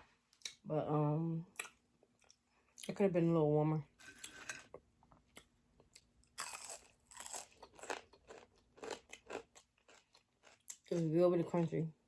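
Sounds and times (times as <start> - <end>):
person chewing crunchy food: 4.0 - 11.1.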